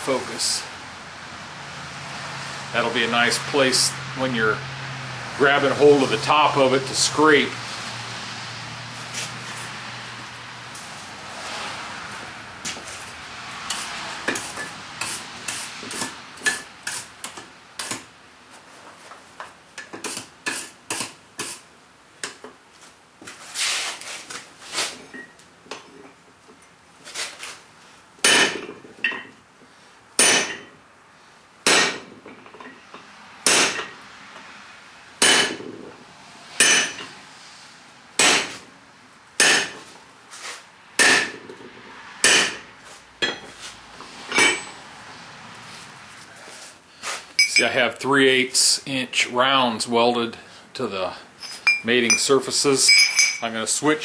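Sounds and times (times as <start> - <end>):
hammer striking hot steel on anvil: 28.2 - 29.2, 30.2 - 30.7, 31.6 - 32.1, 33.4 - 33.9, 35.2 - 35.7, 36.6 - 37.1, 38.2 - 38.6, 39.4 - 39.8, 41.0 - 41.5, 42.2 - 43.5.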